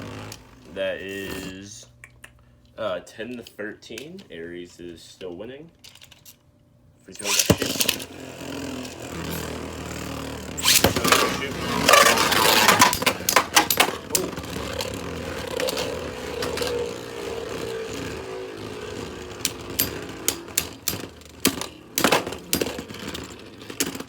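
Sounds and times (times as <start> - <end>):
spinning tops whirring: 7.1 - 24.0
spinning tops clacking together: 7.2 - 8.1, 10.6 - 24.0.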